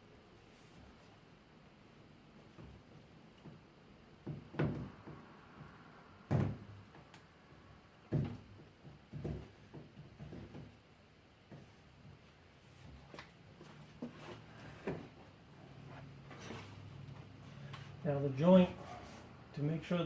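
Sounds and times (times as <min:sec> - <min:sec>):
dull knocks and thumps: 0:04.2 - 0:07.1, 0:08.0 - 0:10.8.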